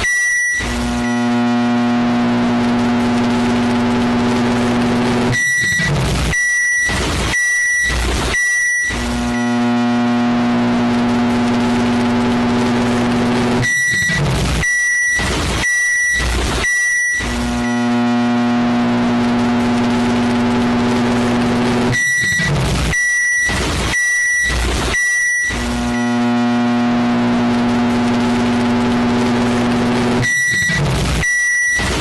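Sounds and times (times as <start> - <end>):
high beeps: 0.0 - 1.2, 5.3 - 9.6, 13.6 - 17.8, 21.9 - 26.2, 30.2 - 32.0
microwave oven humming: 0.6 - 5.3, 10.2 - 13.6, 17.3 - 21.9, 25.6 - 30.3.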